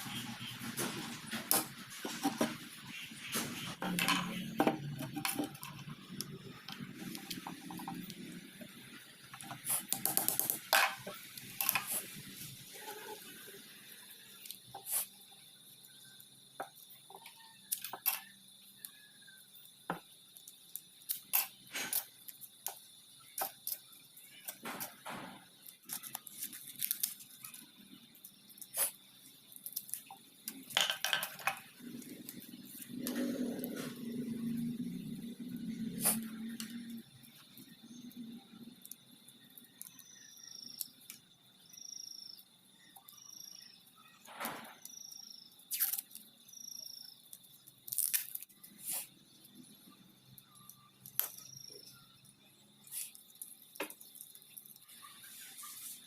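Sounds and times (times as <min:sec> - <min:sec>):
small hard objects clicking: 0:03.8 - 0:12.1, 0:15.8 - 0:33.2, 0:45.7 - 0:46.3, 0:47.3 - 0:49.0.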